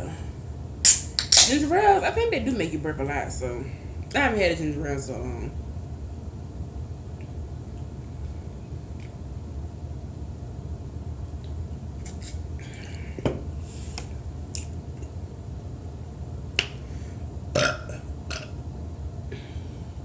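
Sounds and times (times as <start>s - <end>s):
woman burping: 17.6s - 18.5s.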